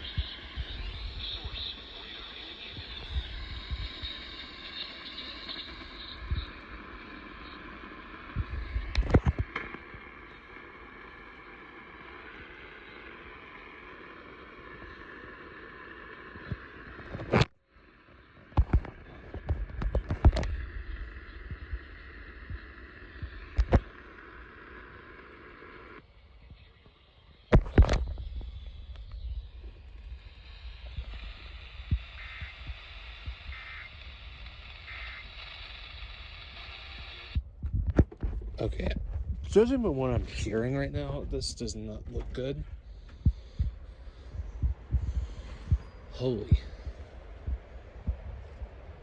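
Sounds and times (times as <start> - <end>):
data-tone bursts: 0.0 - 9.4, 27.5 - 35.9
loud crackle: 0.0 - 26.1, 26.7 - 41.0
radio static hiss: 0.0 - 49.0.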